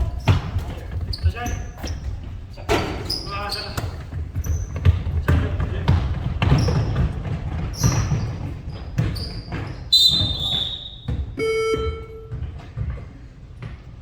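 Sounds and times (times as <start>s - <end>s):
basketball bouncing: 0.0s - 3.0s, 3.7s - 14.0s
sneakers squeaking on court: 0.0s - 14.0s
buzzer: 10.0s - 12.4s.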